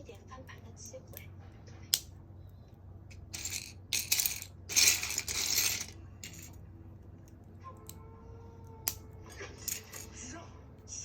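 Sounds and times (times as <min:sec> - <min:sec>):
plastic pieces clattering: 0:03.2 - 0:06.6.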